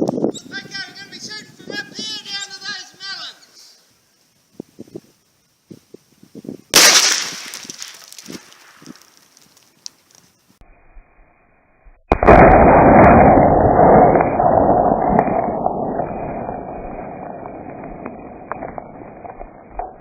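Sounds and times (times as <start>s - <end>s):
rifle shot: 6.8s - 7.8s, 12.1s - 20.0s
long rumble: 12.1s - 20.0s.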